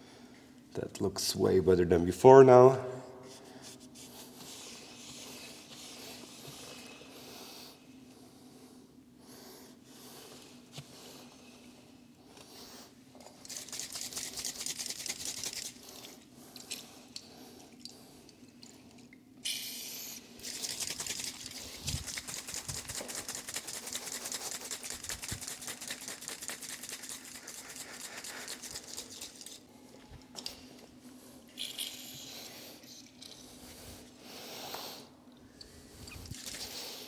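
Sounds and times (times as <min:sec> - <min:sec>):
brush scrubbing a chain: 0:12.8 - 0:18.7, 0:20.2 - 0:30.0, 0:36.0 - 0:37.0.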